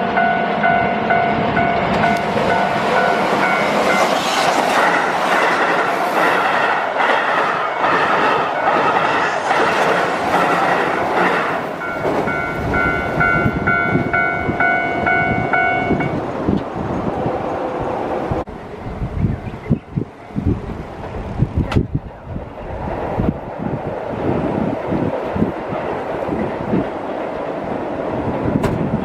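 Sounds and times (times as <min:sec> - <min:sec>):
train wheels clattering on bridge: 0:01.6 - 0:14.6, 0:28.3 - 0:29.0
bell-like ding: 0:11.8 - 0:16.1.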